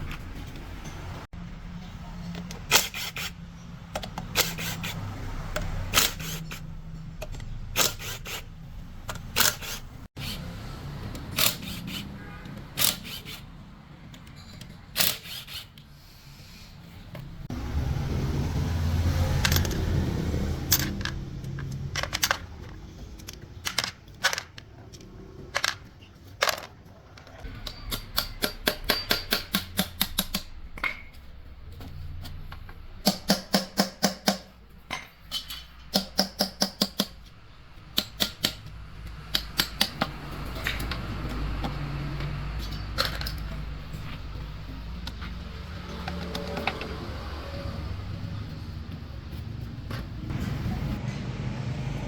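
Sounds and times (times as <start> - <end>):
hand tools clicking on metal: 27.4 - 31.1, 35.3 - 48.0.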